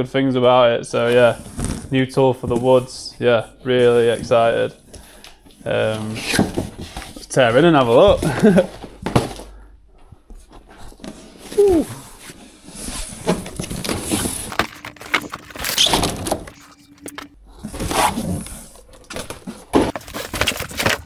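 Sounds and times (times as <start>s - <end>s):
cardboard box ripping: 8.0s - 9.5s, 12.9s - 21.0s.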